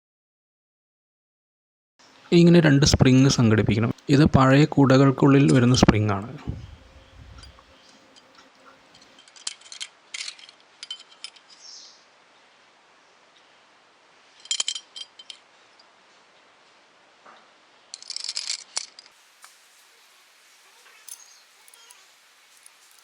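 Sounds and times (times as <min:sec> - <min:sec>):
small metal parts clinking: 0:07.2 - 0:11.7, 0:14.4 - 0:15.9, 0:17.9 - 0:19.2, 0:20.7 - 0:23.0.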